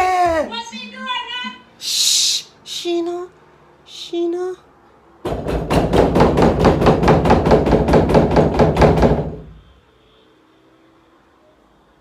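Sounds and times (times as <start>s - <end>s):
rapid pounding on a door: 5.2s - 9.7s.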